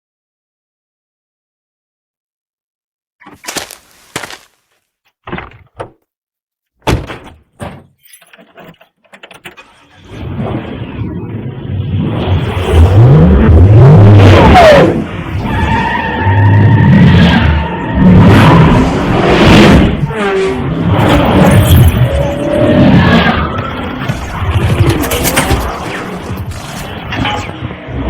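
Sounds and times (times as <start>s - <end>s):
car engines revving: 9.9s - 28.0s.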